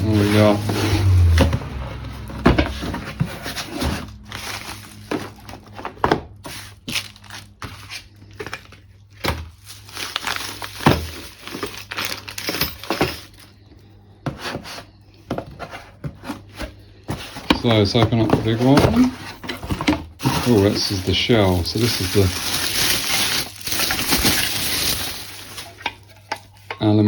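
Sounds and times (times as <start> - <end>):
cardboard crinkling and tearing: 6.5 - 12.1, 17.6 - 26.6.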